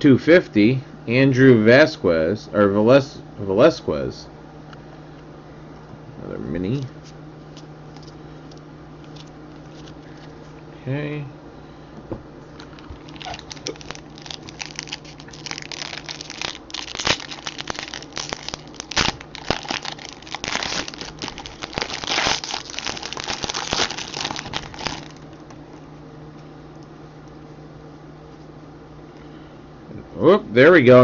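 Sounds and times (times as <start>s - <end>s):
low steady hum: 0.0s - 31.0s
wrapper crinkling: 12.6s - 25.5s.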